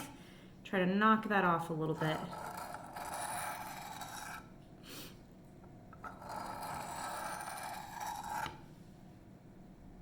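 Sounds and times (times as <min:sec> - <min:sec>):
knife blade scraping on sharpening stone: 0:02.1 - 0:04.5, 0:06.0 - 0:08.6.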